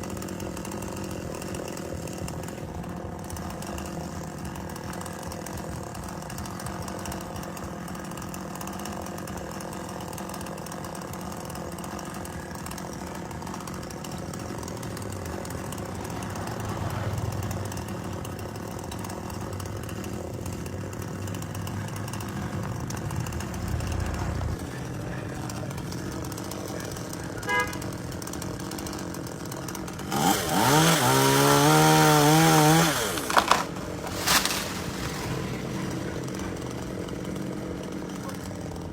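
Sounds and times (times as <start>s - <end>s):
two-stroke chainsaw running: 0.0s - 38.9s.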